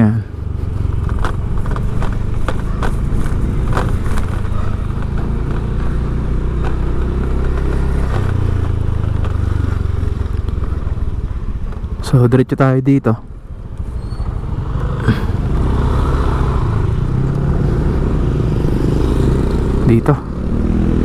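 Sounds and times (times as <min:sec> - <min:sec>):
vehicle engine running: 0:00.0 - 0:12.5, 0:13.2 - 0:21.0
knocks and rattles: 0:00.6 - 0:12.0.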